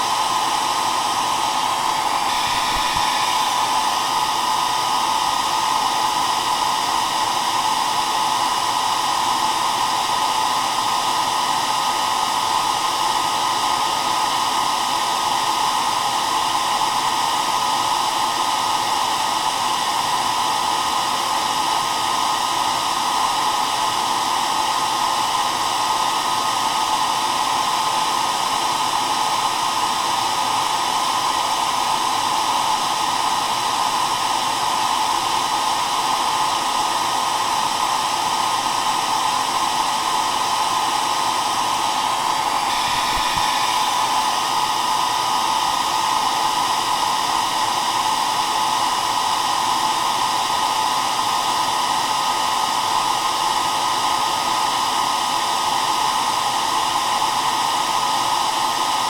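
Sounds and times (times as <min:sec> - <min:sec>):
hair dryer running: 0:00.0 - 0:59.0.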